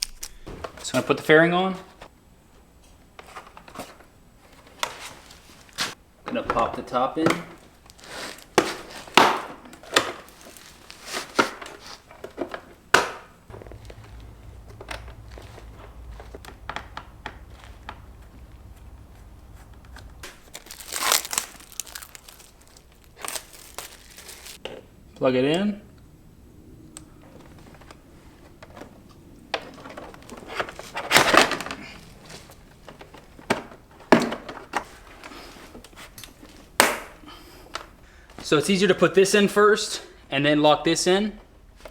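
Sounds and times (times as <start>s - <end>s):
sharp plastic snaps: 0.0s - 0.5s
plastic panels rustling and knocking: 0.5s - 2.1s, 3.1s - 7.8s, 8.4s - 25.0s, 27.1s - 38.0s
low steady hum: 8.7s - 38.3s
plastic panels clicking and knocking: 12.2s - 20.3s.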